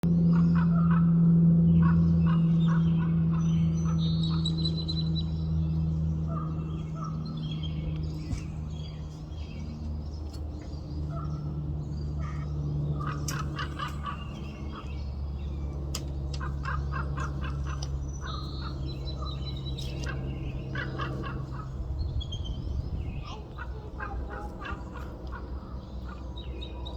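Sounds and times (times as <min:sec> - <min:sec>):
steady low hum: 0:00.0 - 0:26.9
raven calls: 0:06.2 - 0:07.3, 0:12.2 - 0:15.0, 0:16.4 - 0:22.0, 0:23.2 - 0:26.8.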